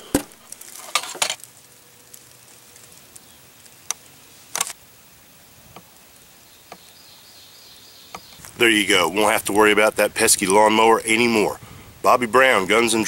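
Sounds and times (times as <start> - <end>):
rustling: 0.0 - 4.9.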